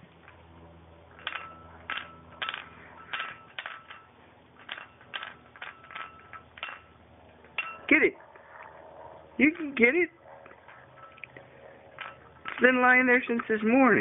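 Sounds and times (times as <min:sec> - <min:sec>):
plate clinking: 0:01.1 - 0:08.8.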